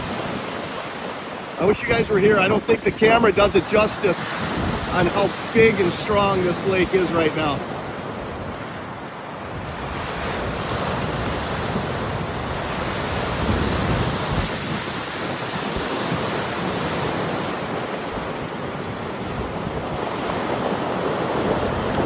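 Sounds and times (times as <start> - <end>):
heavy surf breaking on shore: 0.0 - 22.0
wind buffeting microphone: 1.6 - 16.4.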